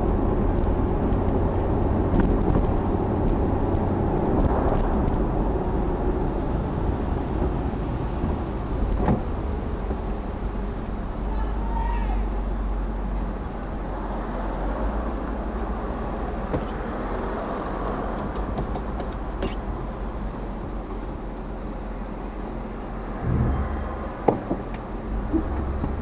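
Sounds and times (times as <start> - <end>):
car engine and road noise: 0.0 - 26.0
brief low rumble: 23.2 - 26.0.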